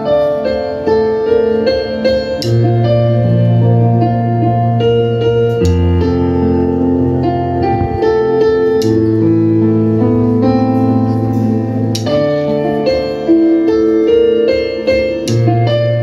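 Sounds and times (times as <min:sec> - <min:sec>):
slow keyboard chords: 0:00.0 - 0:16.0.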